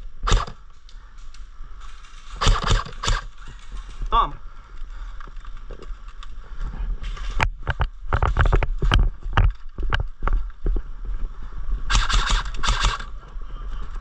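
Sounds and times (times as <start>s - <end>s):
airsoft gun shots: 0.2s - 0.6s, 2.4s - 3.3s, 11.9s - 13.1s.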